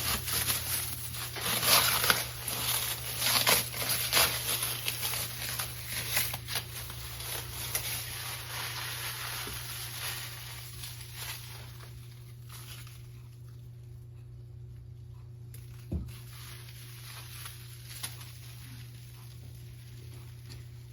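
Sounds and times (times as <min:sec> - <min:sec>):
packaging crinkling and rustling: 0:00.0 - 0:13.5, 0:15.6 - 0:20.9
steady low hum: 0:00.0 - 0:20.9.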